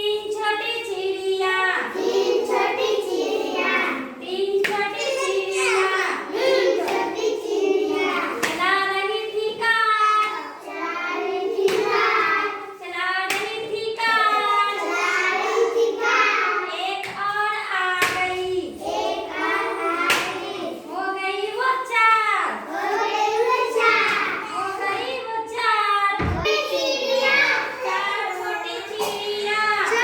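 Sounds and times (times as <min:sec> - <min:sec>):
child singing: 0:00.0 - 0:25.6, 0:26.2 - 0:30.0
sharp claps: 0:08.2 - 0:08.7, 0:11.6 - 0:12.0, 0:13.3 - 0:14.3, 0:18.0 - 0:18.4, 0:20.0 - 0:20.5.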